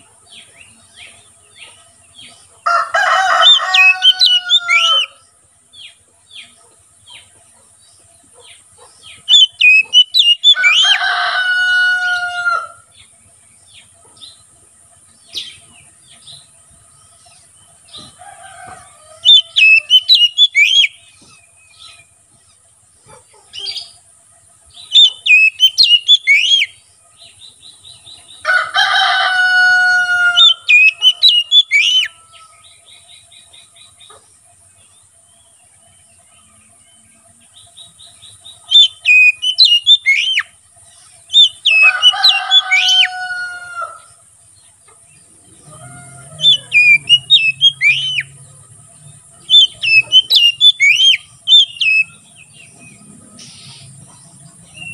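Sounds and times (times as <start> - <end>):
low harsh bird calls: 0.0 - 54.9
bird singing whistled phrases: 9.3 - 10.9, 19.2 - 21.0, 24.9 - 26.7, 30.4 - 32.1, 38.7 - 40.5, 41.4 - 43.1, 46.4 - 48.3, 49.5 - 52.2.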